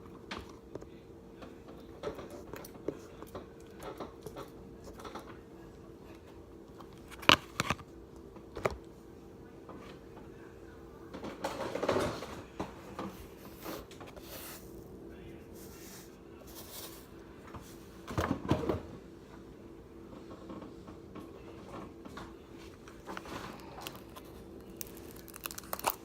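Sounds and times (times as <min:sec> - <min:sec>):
faint steady hum: 0:00.0 - 0:26.0
squishy rustling slime: 0:23.0 - 0:26.0.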